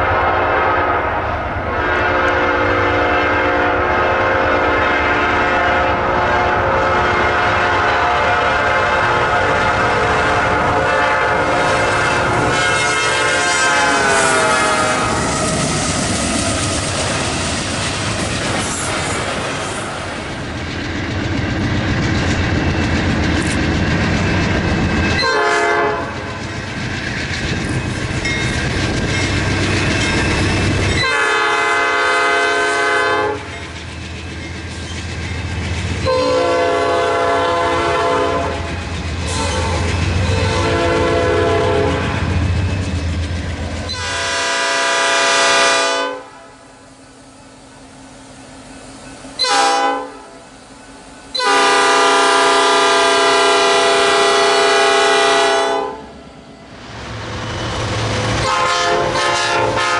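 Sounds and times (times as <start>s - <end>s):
locomotive horn blasts: 0.0s - 15.3s, 25.2s - 26.2s, 31.0s - 33.5s, 36.0s - 38.7s, 39.3s - 42.1s, 43.9s - 46.6s, 49.4s - 50.4s, 51.3s - 56.1s, 58.4s - 59.9s
rumble of passing train: 0.0s - 59.9s.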